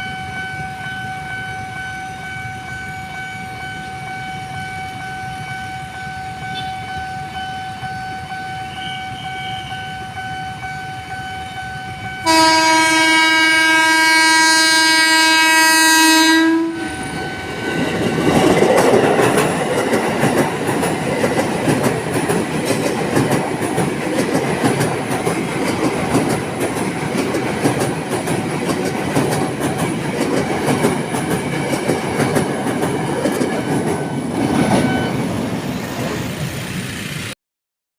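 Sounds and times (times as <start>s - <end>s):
steady high tone: 0.0s - 12.5s, 16.2s - 23.1s, 31.0s - 37.3s
train horn blast: 6.4s - 6.9s, 12.2s - 17.6s, 34.7s - 35.3s
train wheels clattering: 16.9s - 36.9s.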